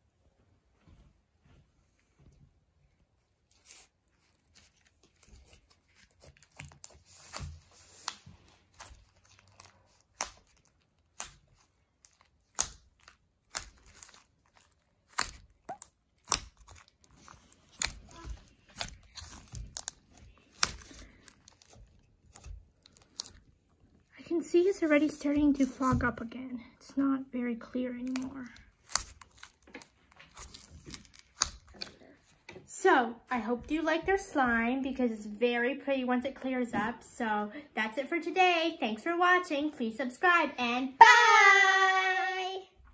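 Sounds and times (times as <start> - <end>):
slime sticky clicks and pops: 9.6 - 14.2, 15.0 - 17.0, 17.7 - 21.7.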